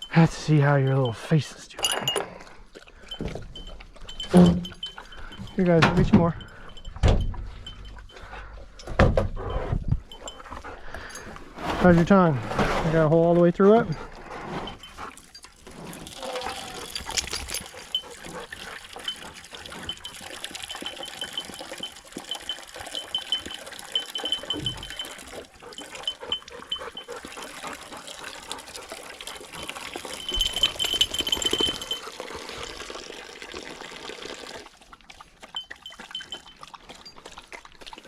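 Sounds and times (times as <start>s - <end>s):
dog lapping water: 1.8s - 5.6s, 13.6s - 38.0s.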